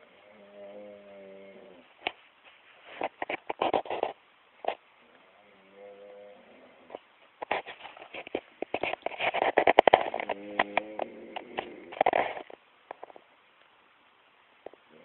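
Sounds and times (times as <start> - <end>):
rustling and crackling clicks: 1.9 - 13.8.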